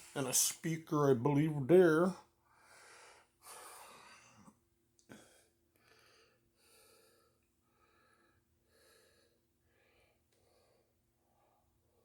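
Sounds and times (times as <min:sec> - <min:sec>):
faint breathing: 0:02.5 - 0:04.5, 0:05.1 - 0:12.0.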